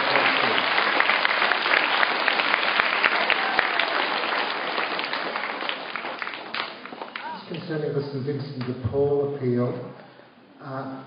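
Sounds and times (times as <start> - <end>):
children applauding: 0.0 - 7.6.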